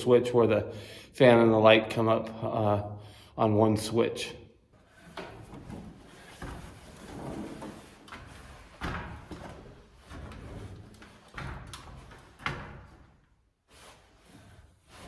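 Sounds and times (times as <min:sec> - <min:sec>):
rubbing and scraping: 0:04.8 - 0:15.0.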